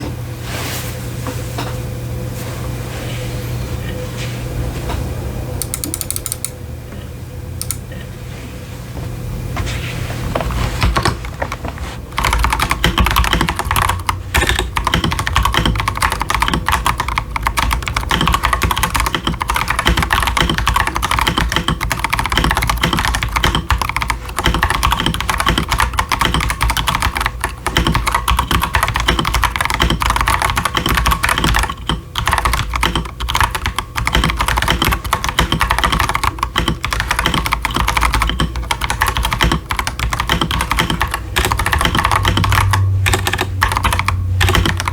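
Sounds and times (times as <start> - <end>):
mechanical keyboard typing: 5.6 - 6.6, 7.6 - 7.8, 10.6 - 44.9.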